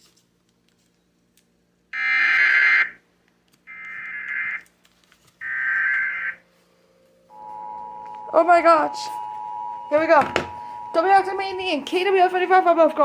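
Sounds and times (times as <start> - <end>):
harsh buzzing digital data blasts: 2.0 - 3.0.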